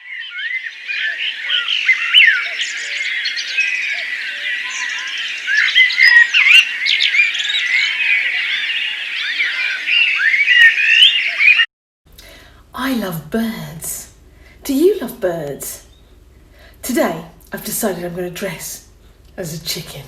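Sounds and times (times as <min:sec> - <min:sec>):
birds singing in chorus: 0:00.0 - 0:11.7, 0:15.8 - 0:16.7.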